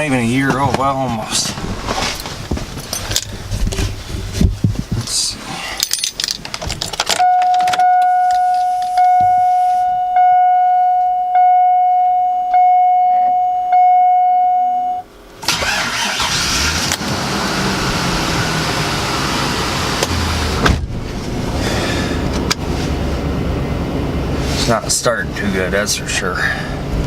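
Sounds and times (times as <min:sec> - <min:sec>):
dashboard warning chime: 0:07.2 - 0:15.1
car engine cold-starting: 0:15.4 - 0:23.0.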